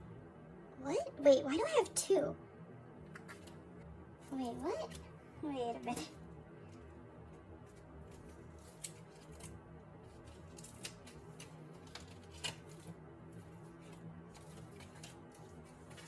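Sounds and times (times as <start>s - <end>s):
plastic sleeves clicking and rustling: 8.1s - 16.0s.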